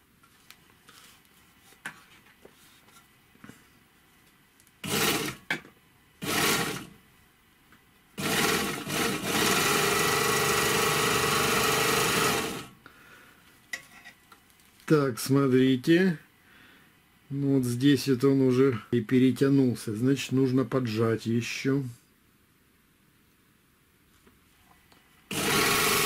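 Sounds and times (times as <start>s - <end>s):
overlocker stitching: 4.8s - 5.5s, 6.2s - 6.9s, 8.2s - 12.7s, 25.3s - 26.0s.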